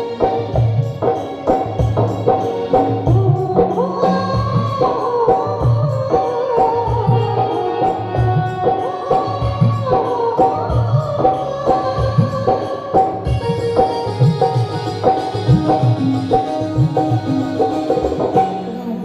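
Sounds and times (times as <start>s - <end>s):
steady drum beat: 0.0s - 18.8s
gliding melody line: 13.4s - 19.0s.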